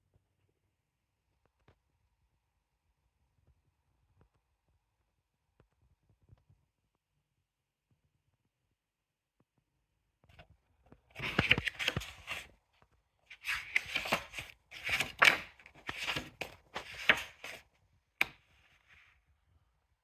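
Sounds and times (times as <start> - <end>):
paper rustling: 11.1 - 12.5, 13.3 - 17.6
sharp paper snap: 11.2 - 12.5, 13.3 - 17.6.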